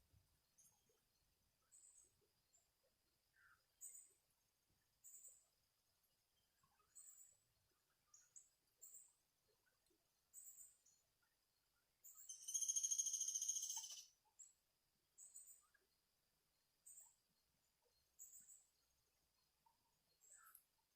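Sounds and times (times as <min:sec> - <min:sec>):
small birds chirping: 0:12.0 - 0:14.5, 0:18.0 - 0:20.7
buzzy bird trill: 0:12.3 - 0:14.1.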